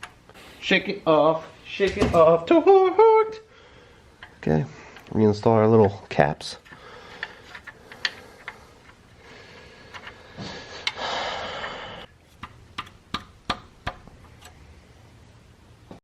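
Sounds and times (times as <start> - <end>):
engine parts and tools clicking: 4.2 - 5.2, 6.6 - 14.6.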